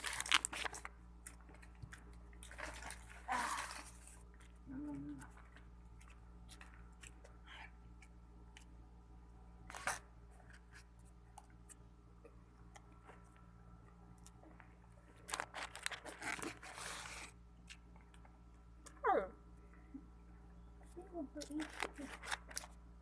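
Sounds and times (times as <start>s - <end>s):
french fries crunching: 0.0s - 8.7s, 15.2s - 18.2s.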